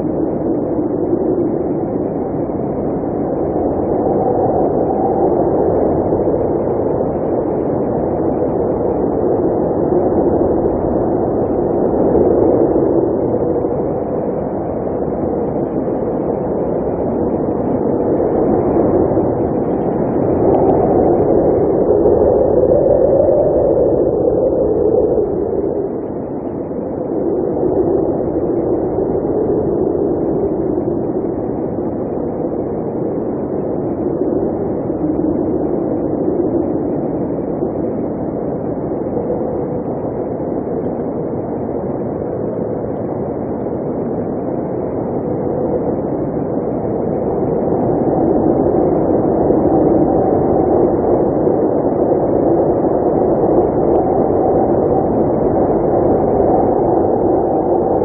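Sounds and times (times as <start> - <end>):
blizzard wind blowing: 0.0 - 58.0.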